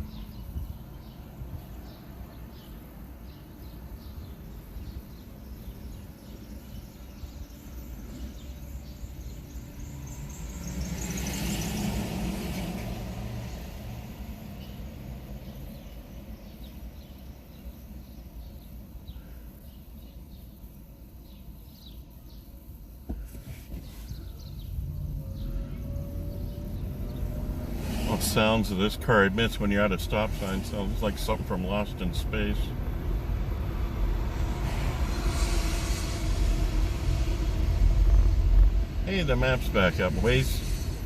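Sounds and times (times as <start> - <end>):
road and tyre rumble: 0.0 - 41.0
rush of passing air: 23.6 - 41.0.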